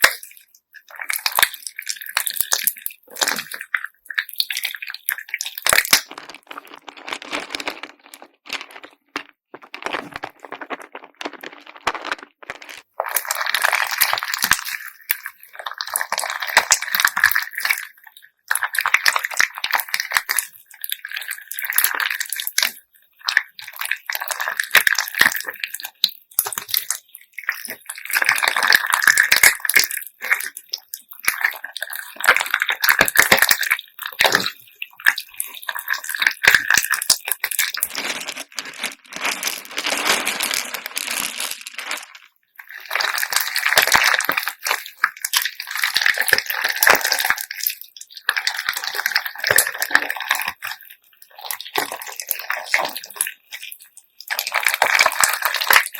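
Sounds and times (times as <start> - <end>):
sticky wet slime crackling: 0.0 - 22.8, 23.4 - 55.9
beads clicking and clattering: 5.6 - 14.5, 37.6 - 47.1.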